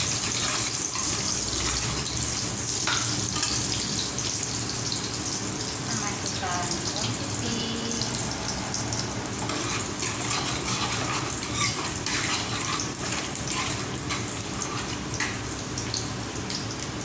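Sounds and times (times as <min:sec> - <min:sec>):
garlic sizzling in oil: 0:00.0 - 0:17.0.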